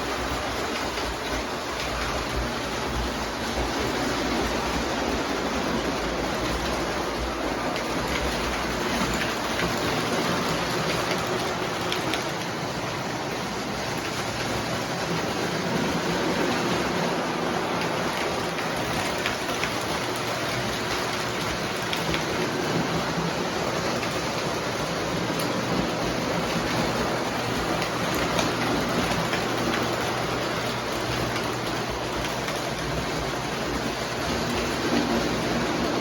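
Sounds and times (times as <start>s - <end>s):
model train wheels rumbling: 0.0s - 36.0s.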